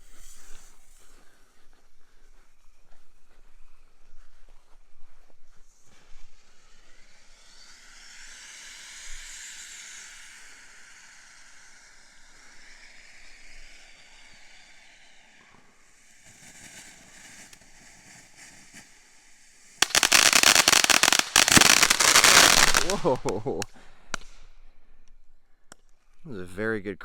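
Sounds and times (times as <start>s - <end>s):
firework crackling: 0.0s - 1.3s, 6.6s - 24.5s
firework hissing: 0.0s - 1.6s, 5.7s - 24.4s.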